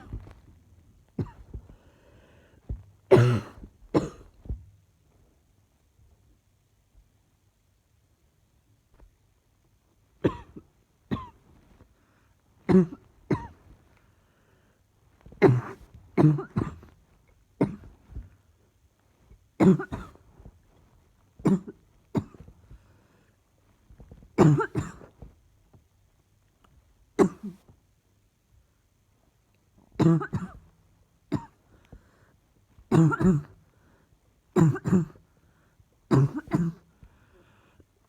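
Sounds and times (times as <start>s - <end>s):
person coughing: 1.2s - 1.7s, 2.7s - 4.6s, 10.2s - 11.4s, 12.7s - 13.7s, 15.4s - 17.0s, 17.6s - 18.2s, 19.6s - 20.2s, 21.4s - 22.5s, 24.4s - 25.2s, 27.2s - 27.6s, 30.0s - 30.7s, 31.3s - 31.6s, 32.9s - 33.6s, 34.6s - 35.2s, 36.1s - 36.9s.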